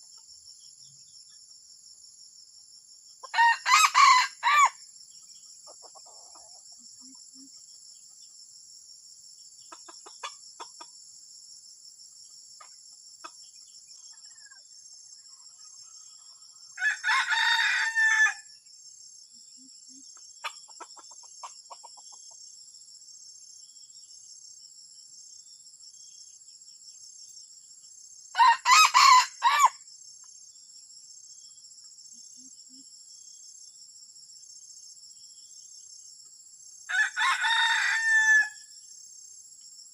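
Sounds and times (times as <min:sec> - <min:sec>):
high insect drone: 0:00.0 - 0:39.9
rooster crowing: 0:03.3 - 0:04.8, 0:16.8 - 0:18.5, 0:28.4 - 0:29.8, 0:36.9 - 0:38.7.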